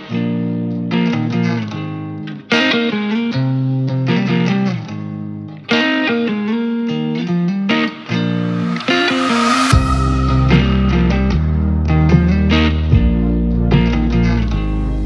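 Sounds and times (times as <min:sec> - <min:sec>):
electric guitar music: 0:00.0 - 0:15.0.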